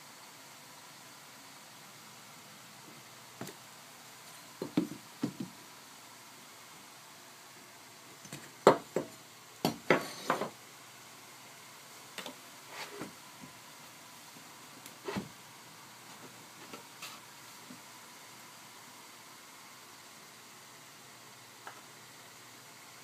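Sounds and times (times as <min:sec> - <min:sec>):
wooden boards knocking: 0:04.6 - 0:05.5.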